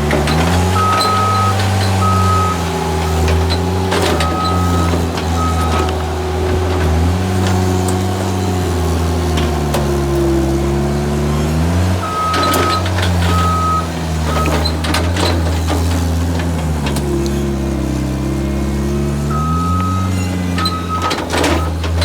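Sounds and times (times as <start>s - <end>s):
skid steer engine revving: 0.0s - 22.0s
backup alarm beeping: 0.7s - 6.0s, 12.0s - 14.7s, 19.3s - 21.8s.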